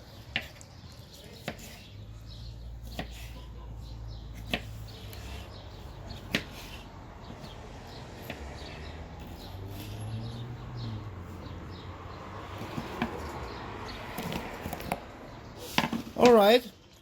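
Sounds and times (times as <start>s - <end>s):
birds chirping faintly: 0.0s - 17.0s.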